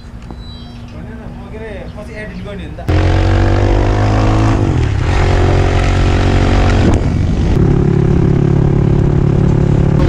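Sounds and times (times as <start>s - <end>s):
dirt bike engine running: 2.9s - 10.0s
wind noise: 2.9s - 10.0s.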